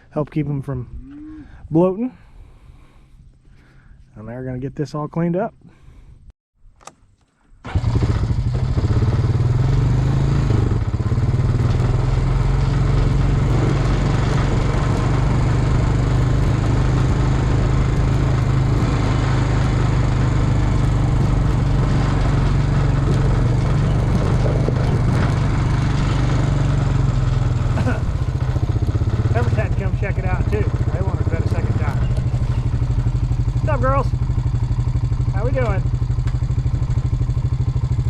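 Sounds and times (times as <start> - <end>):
vehicle engine running: 7.6 - 38.0.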